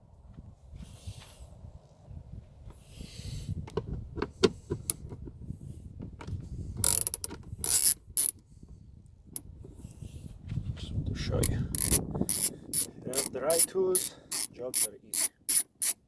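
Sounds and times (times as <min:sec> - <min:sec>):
hand ratchet clicking: 0:06.8 - 0:08.4, 0:11.4 - 0:16.0.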